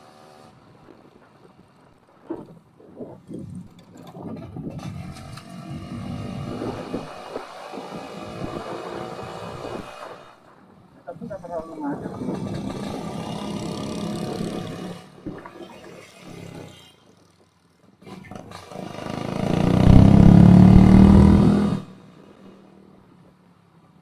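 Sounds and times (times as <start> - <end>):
two-stroke motorcycle engine revving: 4.8 - 10.3, 12.2 - 15.2, 18.2 - 22.1.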